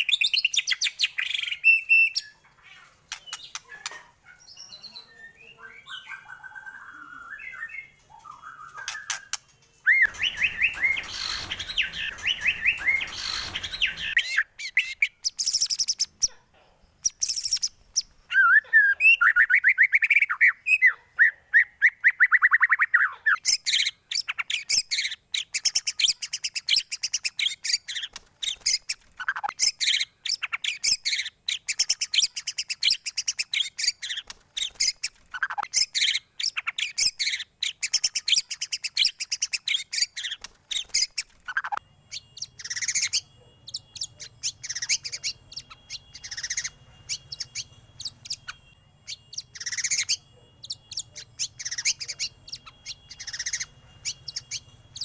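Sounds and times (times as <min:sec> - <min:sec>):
bird song trills and whistles: 0:00.0 - 0:16.3, 0:17.0 - 0:55.0
faint steady tone: 0:25.6 - 0:55.0.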